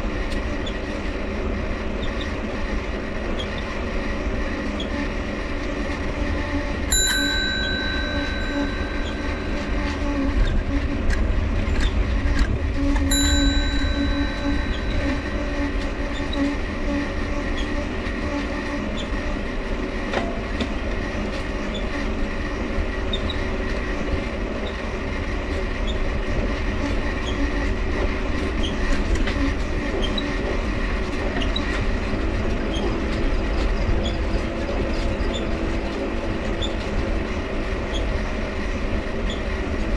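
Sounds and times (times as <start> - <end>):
dynamo humming: 6.2 - 18.8
ringing tone: 6.9 - 10.7, 12.8 - 16.6
cranks squeaking: 6.9 - 19.5.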